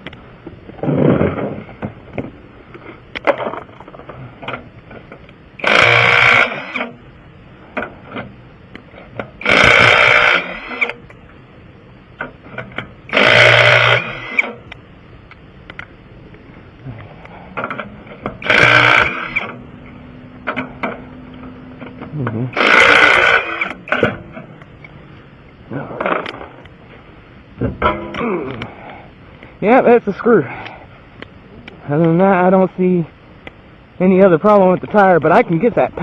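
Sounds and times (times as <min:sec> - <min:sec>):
impact wrench bursts: 0:05.6 - 0:07.0, 0:09.4 - 0:11.0, 0:13.1 - 0:14.6, 0:17.6 - 0:19.6, 0:22.5 - 0:24.2.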